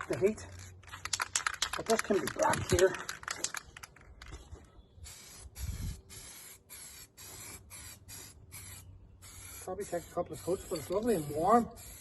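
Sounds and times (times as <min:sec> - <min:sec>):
aerosol spray can hissing: 0:05.1 - 0:12.0.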